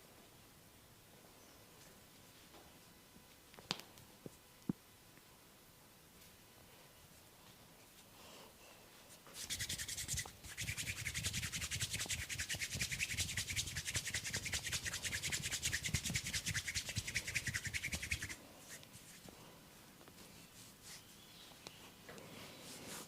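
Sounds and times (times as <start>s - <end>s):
hands rubbing briskly: 9.3s - 19.3s.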